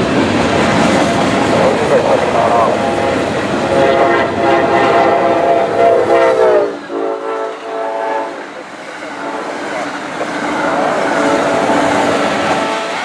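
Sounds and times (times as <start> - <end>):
train rumble: 0.0 - 13.0
train horn chord: 2.3 - 8.5, 10.5 - 13.0.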